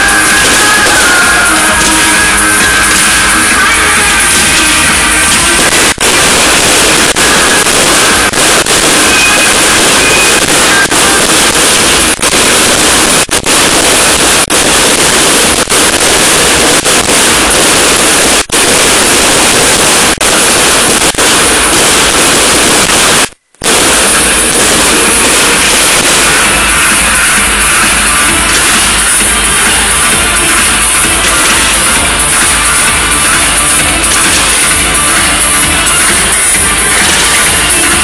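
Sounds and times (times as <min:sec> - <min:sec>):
fireworks din distorted: 0:00.0 - 0:38.0.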